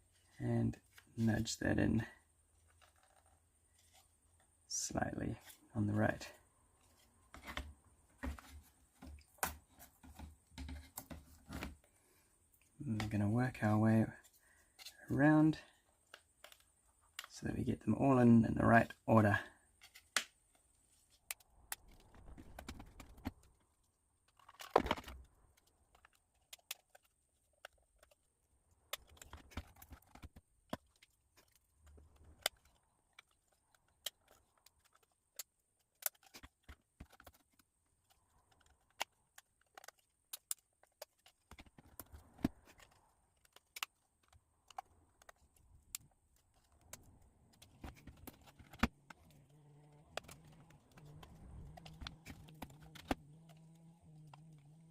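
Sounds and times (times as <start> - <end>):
rustles of handling: 0.0 - 17.4
plywood planks clicking and tapping: 6.2 - 12.0, 19.3 - 28.2, 28.8 - 53.7.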